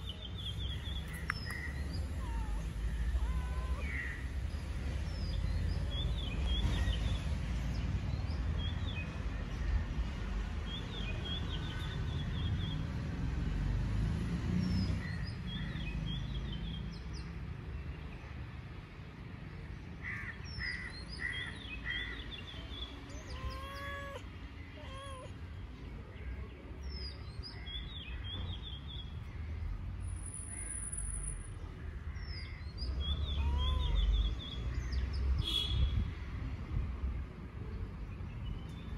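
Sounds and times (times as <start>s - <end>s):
birds chirping: 0.0s - 7.3s, 20.1s - 29.7s, 32.1s - 35.9s.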